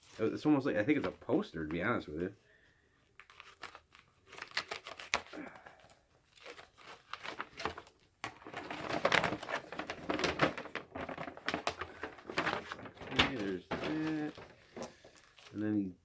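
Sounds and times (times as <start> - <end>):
wrapping paper crinkling and tearing: 3.2 - 15.8.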